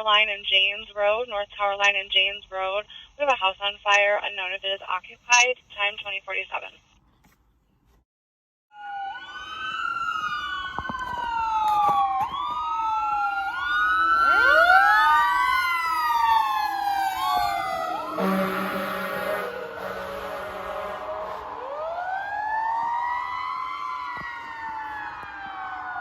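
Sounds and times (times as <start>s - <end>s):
fire engine siren wailing: 8.7s - 26.0s
second siren tone: 8.7s - 26.0s
fire engine air horn blast: 17.9s - 21.6s.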